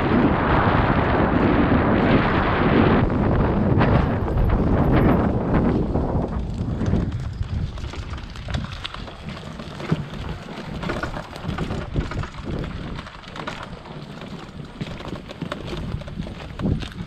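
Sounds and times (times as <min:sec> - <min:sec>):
bike rattling over bumps: 0:00.0 - 0:17.0
tyres crackling on dirt and twigs: 0:03.7 - 0:17.0.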